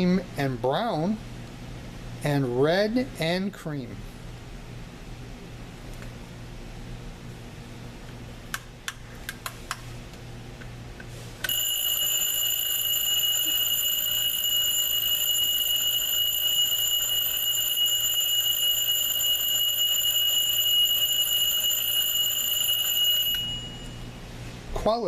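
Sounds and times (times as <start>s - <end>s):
high-pitched alarm tone: 11.5s - 24.2s.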